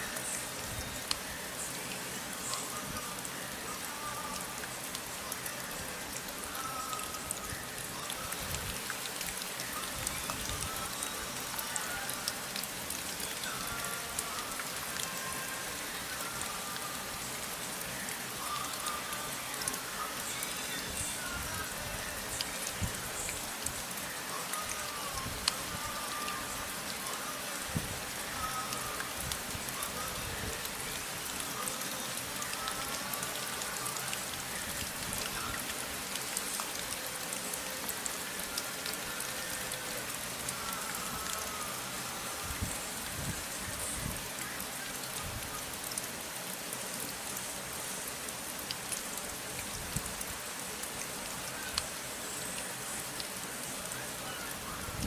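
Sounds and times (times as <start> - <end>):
steady rain falling: 0.0 - 55.0
individual raindrop ticks: 0.1 - 1.3, 22.2 - 27.0.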